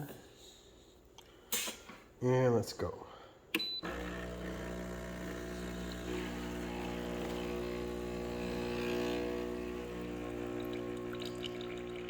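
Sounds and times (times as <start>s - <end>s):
espresso machine pump humming: 3.8s - 12.0s.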